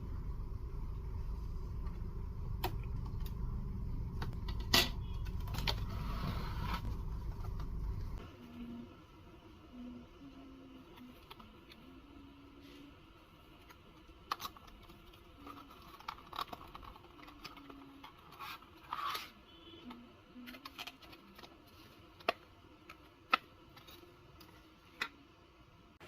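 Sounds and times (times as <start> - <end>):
plastic and metal parts handled: 14.2 - 25.1.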